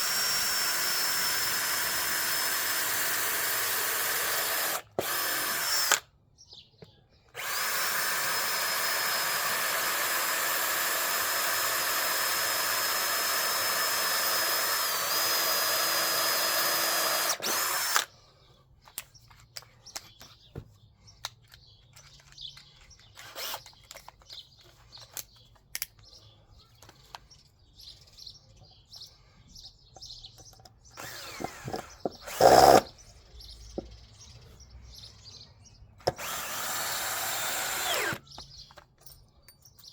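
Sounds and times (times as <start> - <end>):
cordless drill whining into wood: 0.0 - 6.0, 7.3 - 18.1, 23.2 - 23.7, 31.0 - 33.0, 36.0 - 38.5.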